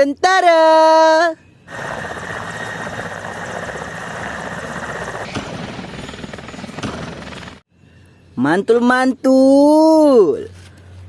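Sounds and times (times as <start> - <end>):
helicopter rotor and engine: 1.7 - 7.7.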